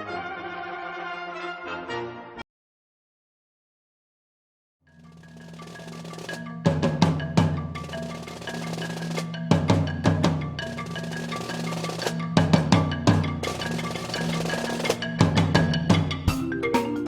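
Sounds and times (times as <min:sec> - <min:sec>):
percussion strikes: 0:05.0 - 0:17.0.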